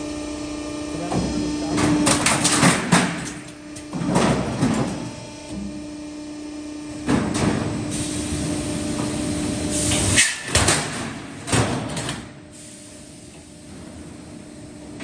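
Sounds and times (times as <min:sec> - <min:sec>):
machine humming: 0:00.0 - 0:10.0.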